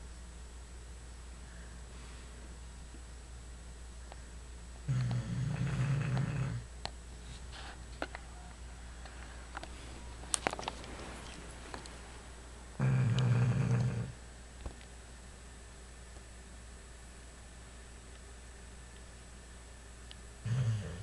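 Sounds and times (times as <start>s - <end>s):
dog snoring: 4.9s - 6.6s, 12.8s - 14.2s, 20.4s - 21.0s.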